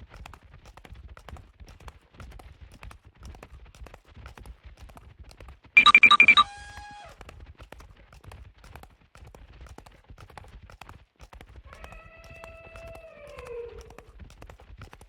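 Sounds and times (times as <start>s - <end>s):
pulsing high ringing tones: 5.8s - 6.5s.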